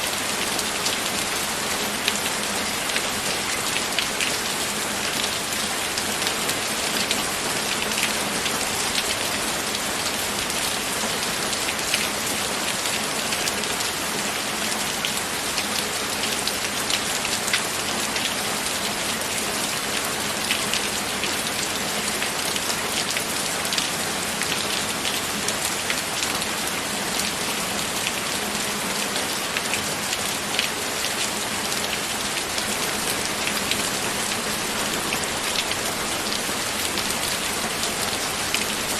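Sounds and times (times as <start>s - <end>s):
raindrops ticking on a surface: 0.2s - 38.9s
rain hissing: 32.3s - 38.9s.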